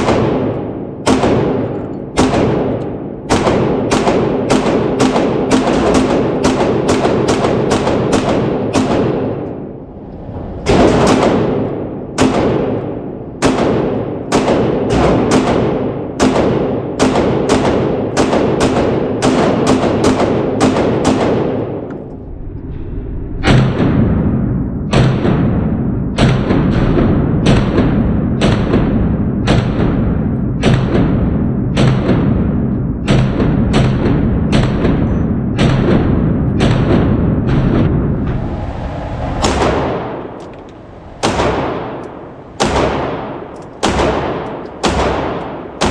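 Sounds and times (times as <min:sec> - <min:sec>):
pistol shots with echo: 0:00.0 - 0:09.8, 0:10.7 - 0:22.1, 0:41.2 - 0:45.9.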